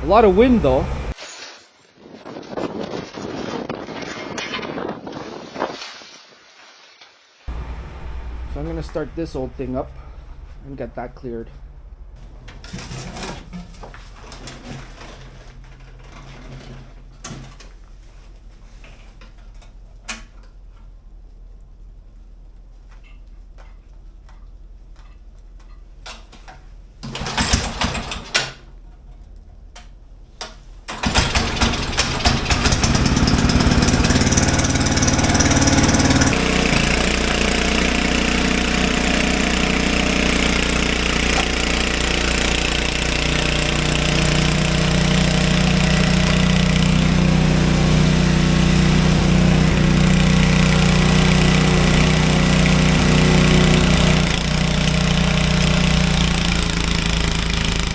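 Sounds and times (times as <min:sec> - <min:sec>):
small engine running: 0:00.0 - 0:01.2, 0:07.5 - 0:17.6, 0:30.9 - 0:57.9
small engine cranking: 0:30.9 - 0:57.9.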